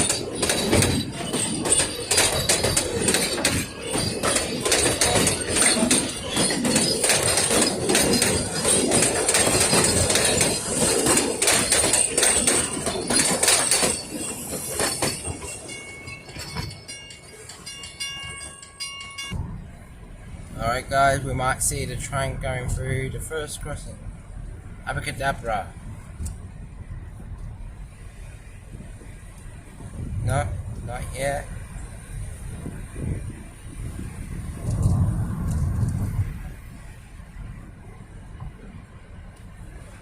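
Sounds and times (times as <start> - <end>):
steam train clattering past: 0.0 - 19.4.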